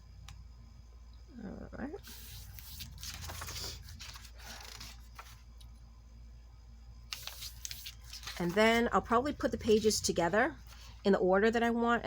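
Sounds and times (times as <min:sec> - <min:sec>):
paper pages rustling: 0:02.0 - 0:05.7, 0:07.1 - 0:10.0.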